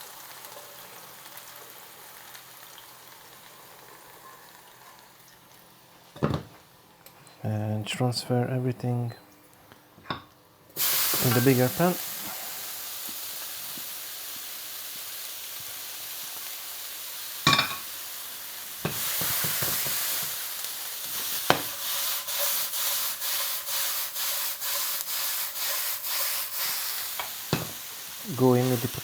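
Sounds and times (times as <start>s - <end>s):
food sizzling in a frying pan: 0.0s - 6.4s, 10.8s - 29.0s
utensil stirring and scraping: 21.1s - 27.7s
knock of pan: 21.5s - 21.7s, 27.5s - 27.8s.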